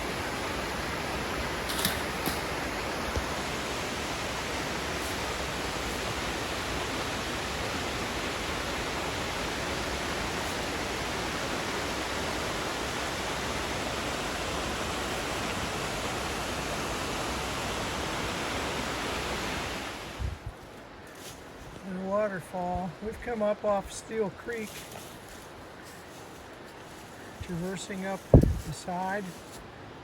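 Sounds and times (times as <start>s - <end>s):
waterfall rushing: 0.0s - 20.2s.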